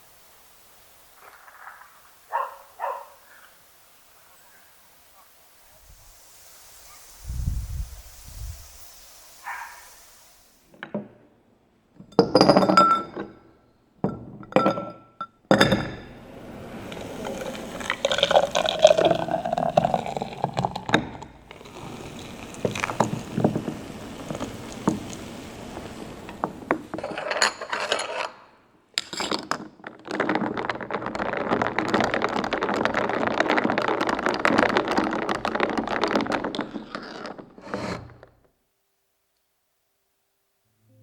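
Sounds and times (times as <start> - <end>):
drink frothing: 5.8 - 10.7, 15.9 - 27.5, 30.1 - 38.3
cup and utensils clinking: 12.0 - 38.3
liquid poured into cup: 16.4 - 27.2.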